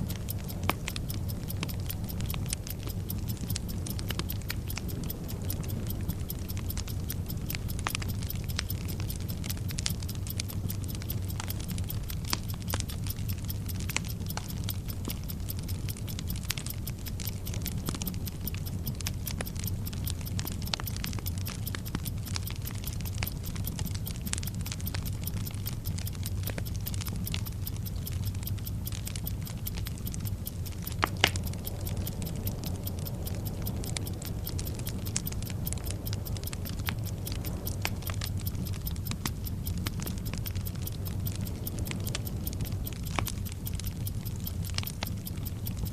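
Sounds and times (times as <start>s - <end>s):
burning fuse crackling: 0.0s - 45.9s
clock ticking: 0.0s - 45.9s.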